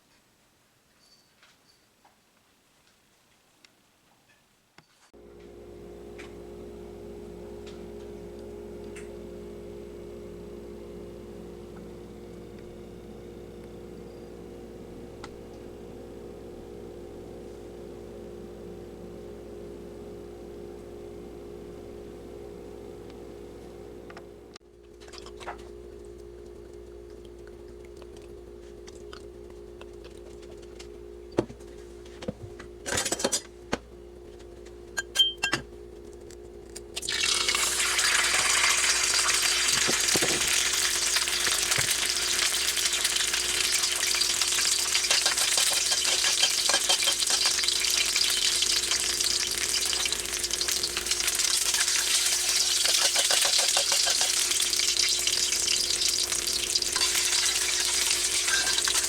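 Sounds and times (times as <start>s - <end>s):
food sizzling in hot oil: 37.0s - 59.0s
utensils clinking on cookware: 45.0s - 47.8s, 51.8s - 54.5s, 57.0s - 59.0s.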